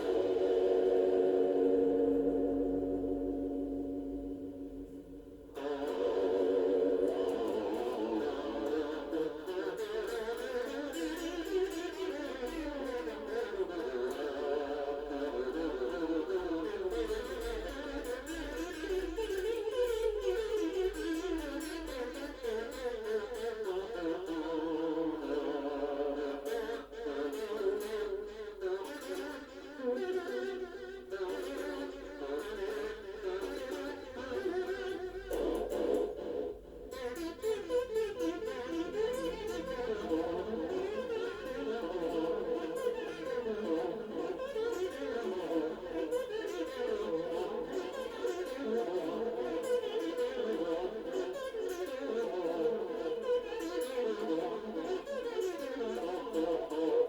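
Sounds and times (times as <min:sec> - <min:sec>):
wavering tones with vibrato: 0:00.0 - 0:10.4.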